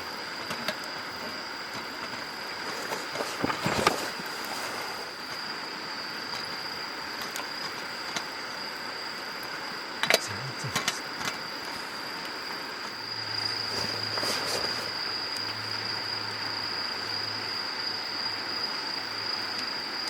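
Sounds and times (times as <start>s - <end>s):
steady hiss: 0.0s - 20.0s
thin high tone: 10.1s - 11.1s.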